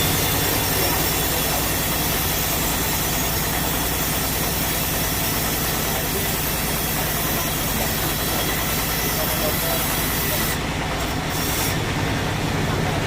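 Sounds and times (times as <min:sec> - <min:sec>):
low engine hum: 0:11.8 - 0:13.0.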